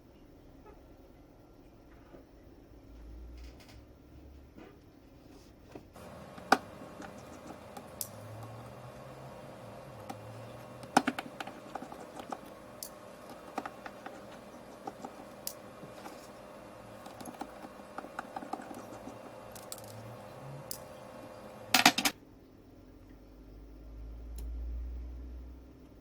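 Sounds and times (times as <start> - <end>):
steady hum: 6.0 - 22.2.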